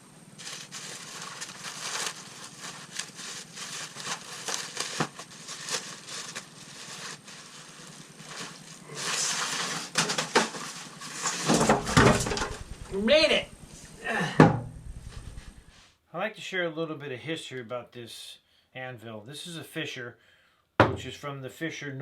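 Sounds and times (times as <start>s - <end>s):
foam and cardboard crackling: 0.3s - 13.6s.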